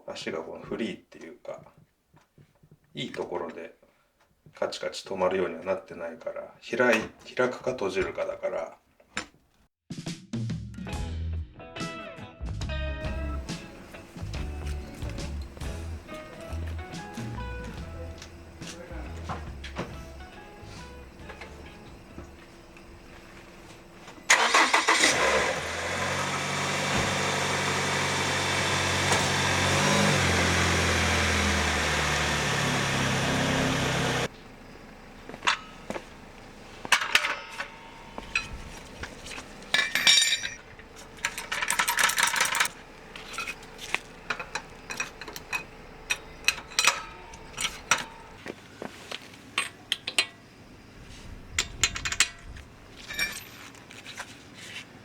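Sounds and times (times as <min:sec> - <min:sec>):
car engine running: 0:13.1 - 0:37.0, 0:42.6 - 0:48.4
metallic clinks and knocks: 0:36.9 - 0:48.4, 0:51.5 - 0:54.0.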